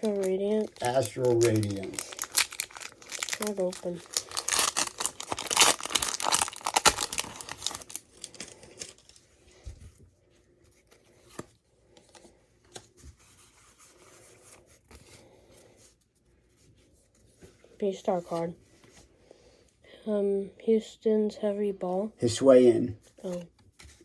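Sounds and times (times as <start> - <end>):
foil wrapper tearing and crinkling: 0.0 - 9.2
cards rustling and clicking: 0.0 - 9.3.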